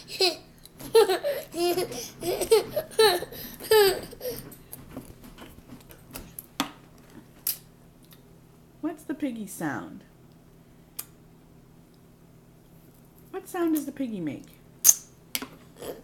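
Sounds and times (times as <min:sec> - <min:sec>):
toddler laughing and squealing: 0:00.0 - 0:04.5.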